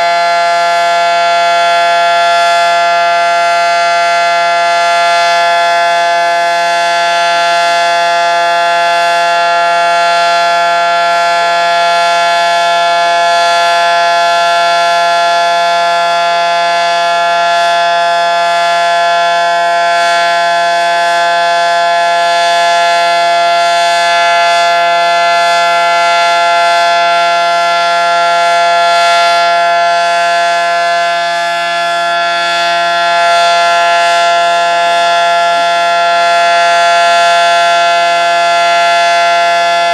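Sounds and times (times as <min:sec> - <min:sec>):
dual-tone siren steady chord: 0:00.0 - 0:39.9.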